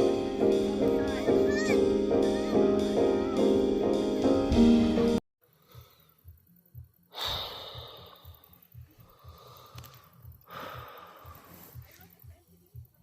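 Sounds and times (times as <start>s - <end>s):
slow breaths close to microphone: 7.0s - 12.2s.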